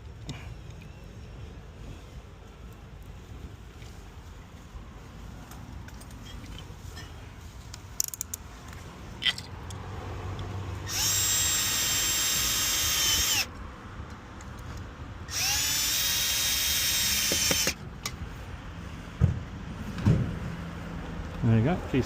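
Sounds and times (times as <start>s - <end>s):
power drill whining: 10.9s - 13.5s, 15.3s - 17.8s.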